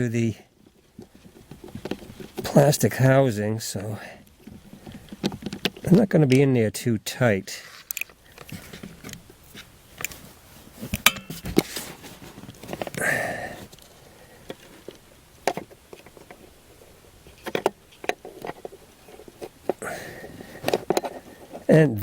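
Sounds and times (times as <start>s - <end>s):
rustling scrape: 0.5s - 3.1s, 7.6s - 15.0s, 15.6s - 21.7s.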